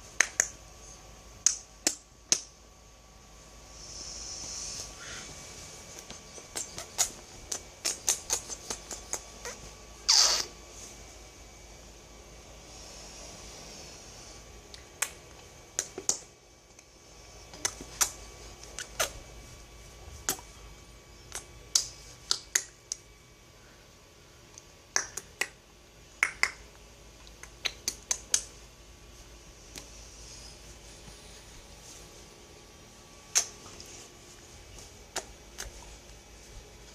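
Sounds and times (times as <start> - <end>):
mouth and tongue clicks: 0.2 - 0.6, 6.0 - 10.5, 14.7 - 16.3, 17.5 - 19.2, 20.2 - 20.5, 21.3 - 23.1, 24.5 - 25.6, 26.2 - 28.5, 33.3 - 33.6, 35.1 - 35.8.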